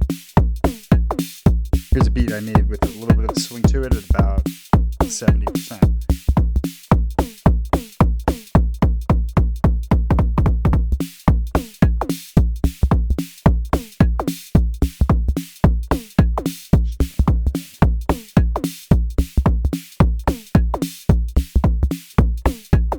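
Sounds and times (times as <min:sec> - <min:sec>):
bright hi-hat strokes: 0:00.0 - 0:09.9, 0:10.9 - 0:22.9
drum machine beat: 0:00.0 - 0:22.9
deep kick drum hits: 0:10.0 - 0:10.9.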